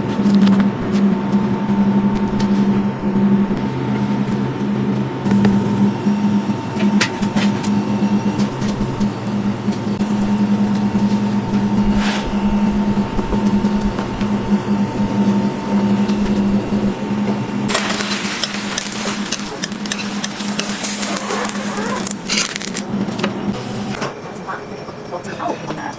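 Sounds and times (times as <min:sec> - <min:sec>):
machine hum: 0:00.0 - 0:25.9.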